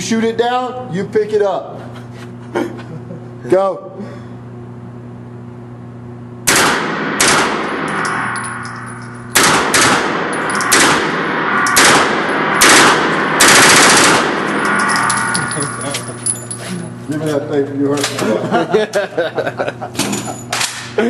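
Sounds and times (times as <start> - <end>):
steady low hum: 0.0 - 21.0
gunshots: 6.5 - 8.2, 9.3 - 15.4.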